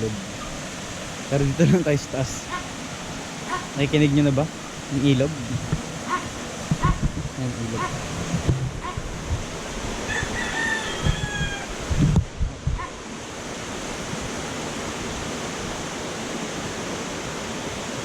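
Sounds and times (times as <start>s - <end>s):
river rushing: 0.0s - 18.0s
low thumps: 5.3s - 9.5s
rooster crowing: 10.0s - 11.8s.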